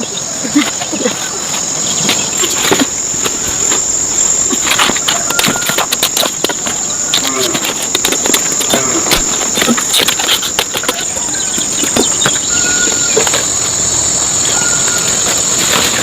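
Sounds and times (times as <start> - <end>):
high-pitched insect buzzing: 0.0 - 16.0
voices: 0.0 - 16.0.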